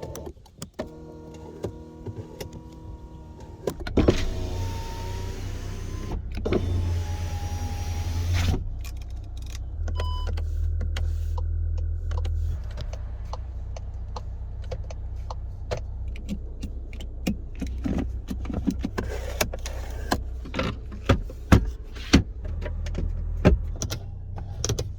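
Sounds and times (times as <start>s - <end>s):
power window motor: 0.0s - 8.9s, 18.1s - 20.4s
car controls clicking and knocking: 9.0s - 24.9s.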